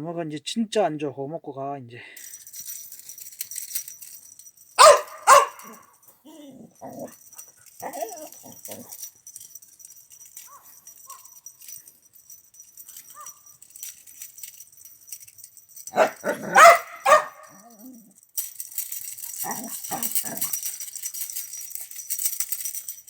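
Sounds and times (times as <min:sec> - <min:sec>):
dog barking: 0:04.8 - 0:07.1, 0:10.5 - 0:11.4, 0:16.0 - 0:18.0
dog whimpering: 0:04.8 - 0:07.2, 0:07.8 - 0:09.0
dog whining yelps: 0:04.8 - 0:09.0, 0:15.9 - 0:18.1, 0:19.4 - 0:20.6.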